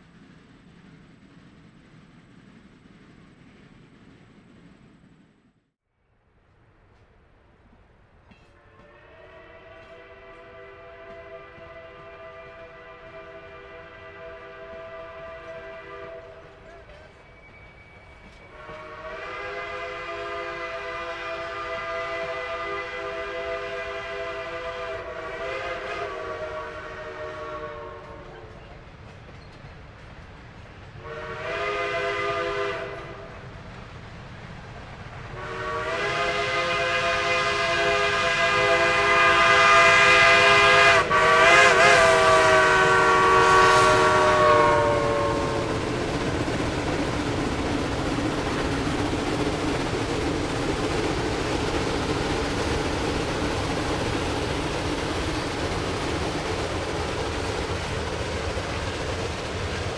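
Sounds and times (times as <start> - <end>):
steam locomotive whistle blasts: 8.4 - 28.6, 31.0 - 33.4, 35.4 - 45.9.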